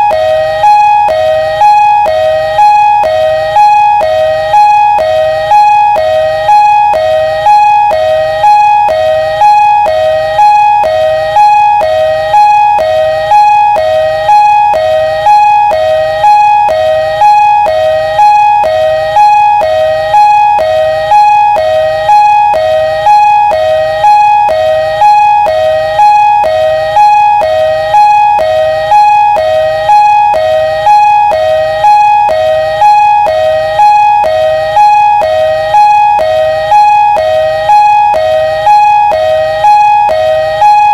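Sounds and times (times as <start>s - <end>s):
two-tone ambulance siren: 0.0s - 40.9s.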